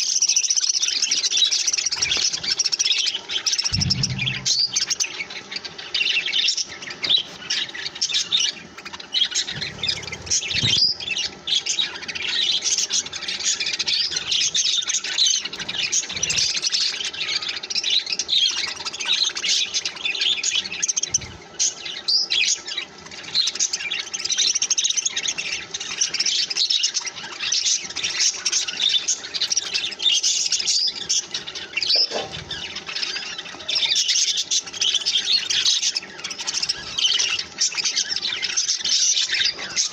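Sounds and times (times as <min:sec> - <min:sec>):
budgerigars chirping and squawking: 0:00.0 - 0:39.9
soft low thumps: 0:03.7 - 0:05.0.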